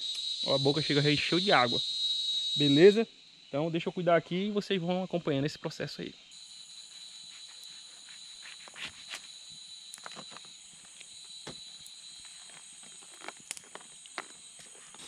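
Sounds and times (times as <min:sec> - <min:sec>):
insects trilling: 0:00.0 - 0:15.0
campfire clicks and snaps: 0:13.0 - 0:14.4.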